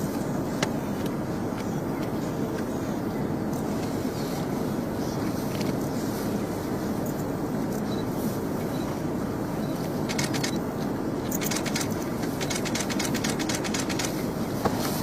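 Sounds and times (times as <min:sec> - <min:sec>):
vehicle engine rumbling: 0:00.0 - 0:15.0
quick sharp clicks: 0:11.3 - 0:14.2.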